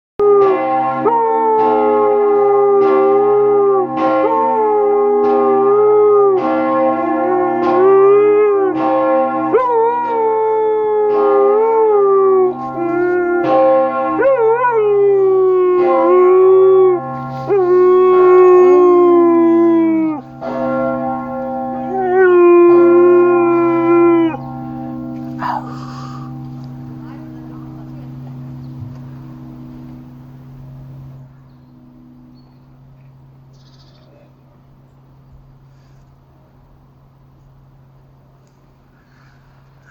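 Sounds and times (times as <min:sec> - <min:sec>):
church bells pealing: 0:00.2 - 0:39.9
dog howling: 0:09.5 - 0:13.6, 0:14.2 - 0:20.3, 0:21.8 - 0:24.4, 0:25.4 - 0:26.3.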